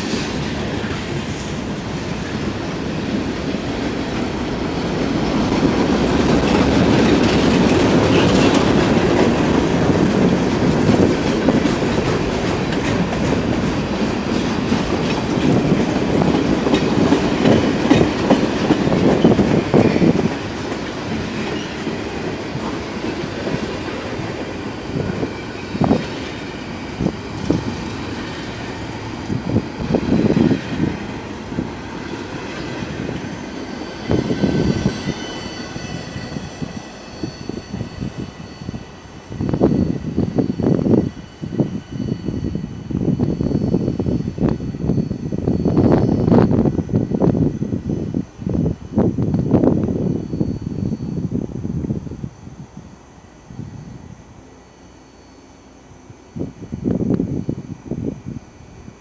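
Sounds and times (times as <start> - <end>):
train wheels clacking over rail joints: 0.0 - 36.4.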